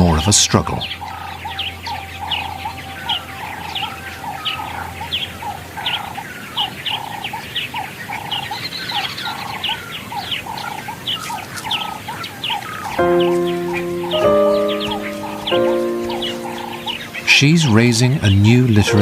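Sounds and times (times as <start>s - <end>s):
low bird call: 0.0s - 17.8s
birds chirping and whistling: 0.0s - 19.0s.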